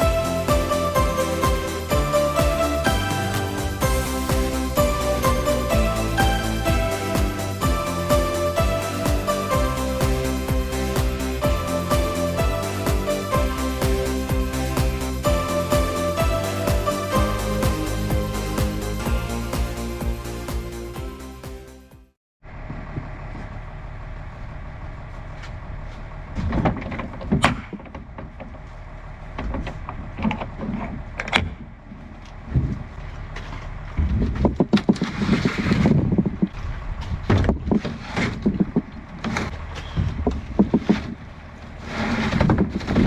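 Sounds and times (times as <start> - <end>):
engine running: 0.0 - 21.8, 22.4 - 37.8, 38.4 - 43.0
metal clunks and clatters: 26.3 - 43.0.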